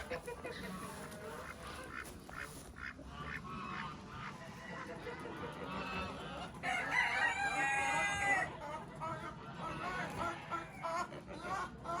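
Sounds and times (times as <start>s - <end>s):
rooster crowing: 6.6s - 8.4s.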